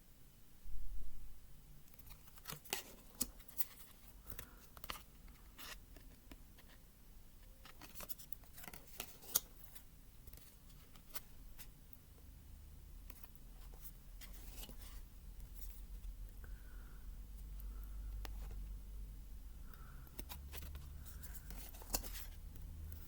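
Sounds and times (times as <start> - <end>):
paper rustling: 13.1 - 15.8, 20.2 - 22.4
cards clicking and tapping: 19.7 - 23.0.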